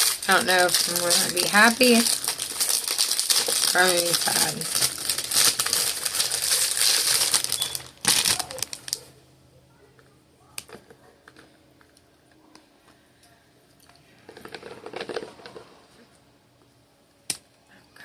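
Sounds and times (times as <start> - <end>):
packaging crinkling and rustling: 0.0 - 9.1, 14.3 - 15.8.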